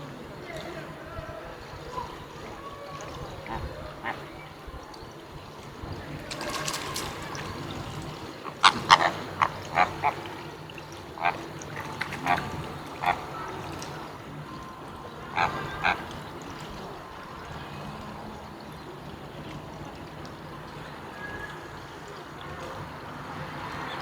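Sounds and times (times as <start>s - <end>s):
flock background noise: 0.0s - 24.0s
flamingos honking: 1.6s - 20.0s.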